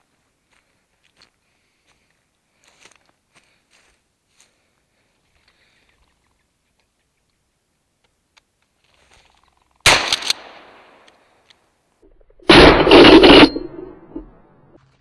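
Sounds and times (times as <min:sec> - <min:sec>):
shotgun shots: 0:09.9 - 0:11.0, 0:12.5 - 0:14.2.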